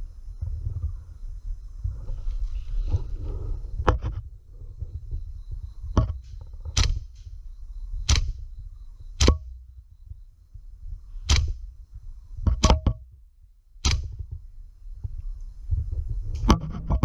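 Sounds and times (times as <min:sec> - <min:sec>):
microphone handling noise: 0:00.0 - 0:07.4, 0:13.8 - 0:17.0
wind rumbling: 0:00.0 - 0:17.0
airsoft rifle shots: 0:06.2 - 0:07.3, 0:08.0 - 0:08.4, 0:09.2 - 0:09.7, 0:11.2 - 0:11.7, 0:13.8 - 0:14.2.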